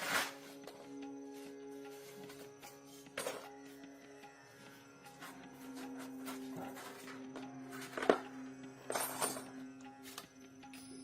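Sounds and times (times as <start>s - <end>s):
soft background music: 0.0s - 11.0s.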